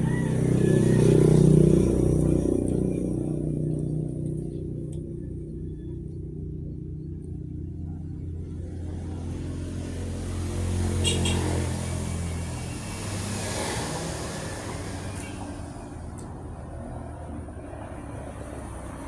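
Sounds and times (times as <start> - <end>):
vehicle driving past: 0.0 - 4.4, 8.5 - 19.0.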